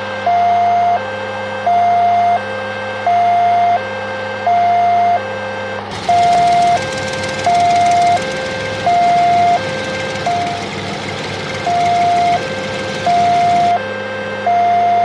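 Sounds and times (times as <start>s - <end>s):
toy two-tone siren: 11.7s - 15.0s.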